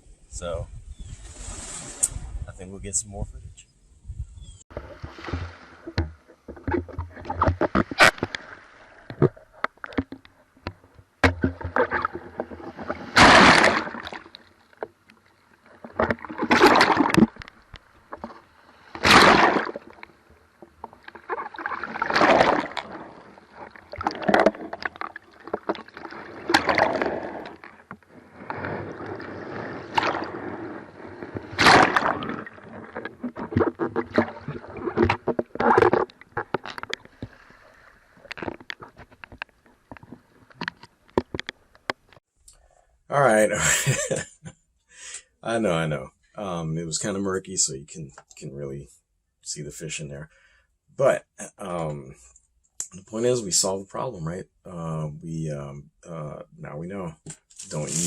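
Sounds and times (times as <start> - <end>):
water sloshing and splashing: 1.2 - 2.4, 4.7 - 42.2.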